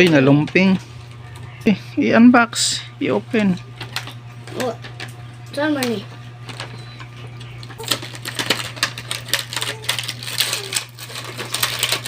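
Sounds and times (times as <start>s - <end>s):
packaging clicks and crackles: 3.8s - 12.0s.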